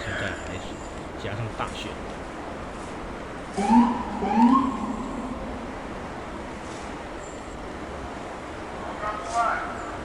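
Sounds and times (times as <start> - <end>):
street traffic noise: 0.0 - 10.0
siren rising whoops: 3.6 - 5.7.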